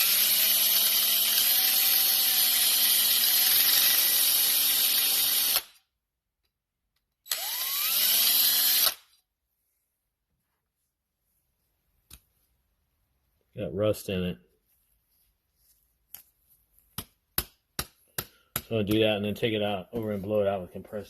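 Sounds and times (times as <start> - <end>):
electric drill whining: 0.0 - 5.8, 7.2 - 9.1.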